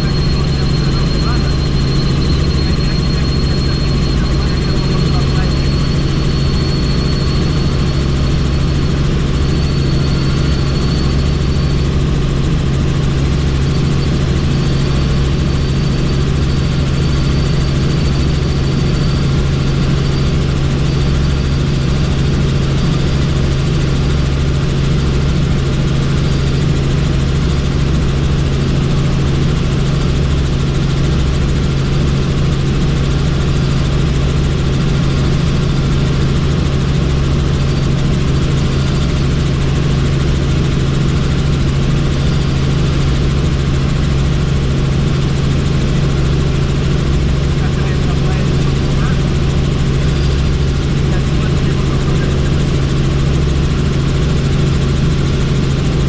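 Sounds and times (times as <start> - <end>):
helicopter rotor and engine drone: 0.0 - 56.0.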